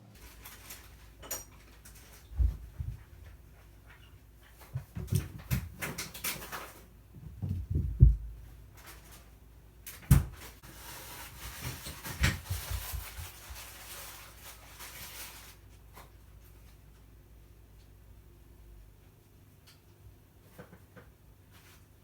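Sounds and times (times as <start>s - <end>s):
cats scuffling: 0.0s - 16.9s
bodies thumping on floor: 7.2s - 8.4s.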